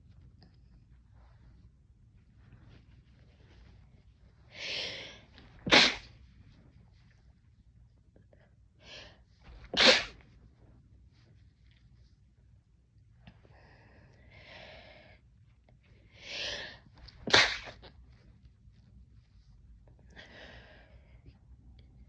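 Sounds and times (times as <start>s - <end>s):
person sneezing: 4.6s - 6.1s, 9.5s - 10.2s, 17.1s - 17.9s.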